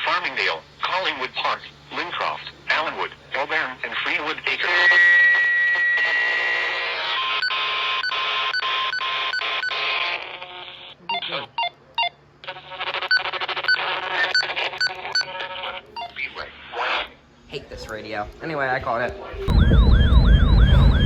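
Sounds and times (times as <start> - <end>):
buzzing electronic data tone: 13.0 - 15.3, 19.2 - 21.0.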